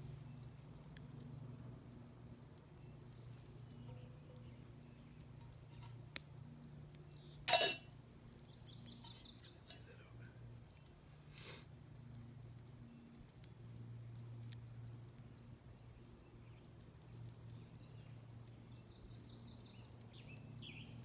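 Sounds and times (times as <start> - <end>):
campfire crackling: 0.0 - 21.0
metal cookware clinking: 7.5 - 7.9.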